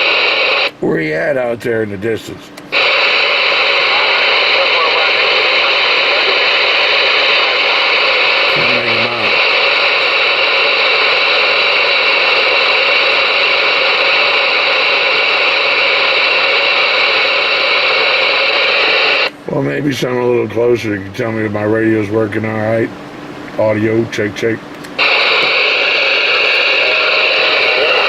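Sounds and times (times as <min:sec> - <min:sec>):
radio static hiss: 0:00.0 - 0:00.9, 0:02.3 - 0:22.9, 0:23.6 - 0:28.0
faint voice over radio: 0:02.8 - 0:12.6, 0:25.0 - 0:28.0.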